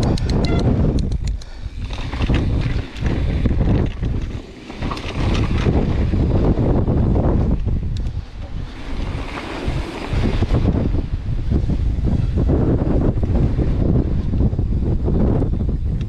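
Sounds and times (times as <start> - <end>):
sharp clicks: 0.0 - 1.6
gusty wind buffeting microphone: 0.0 - 16.0.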